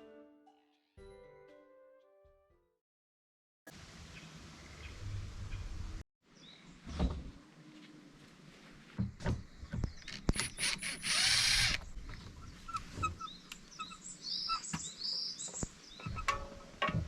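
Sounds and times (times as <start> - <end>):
birds chirping: 9.3 - 16.5
power drill burst: 10.3 - 11.8
tool knocks and clicks: 16.0 - 17.0.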